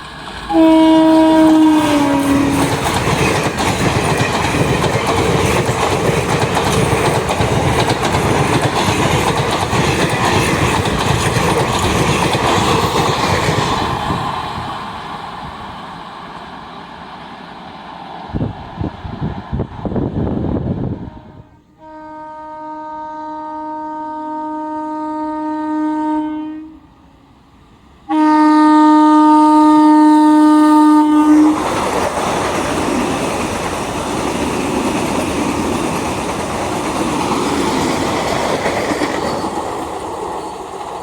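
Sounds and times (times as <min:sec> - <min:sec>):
train passing with wheel clatter: 0:00.0 - 0:23.1, 0:25.0 - 0:41.0
train horn: 0:00.5 - 0:02.9, 0:20.7 - 0:27.0, 0:28.1 - 0:31.7.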